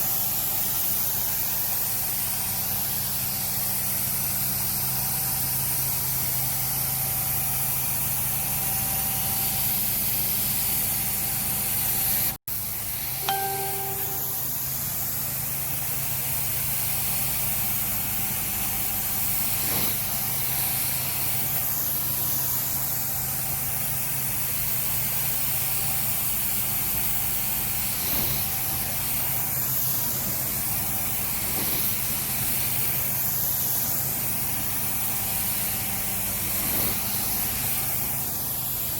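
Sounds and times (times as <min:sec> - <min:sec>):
short tone: 0:13.2 - 0:14.6.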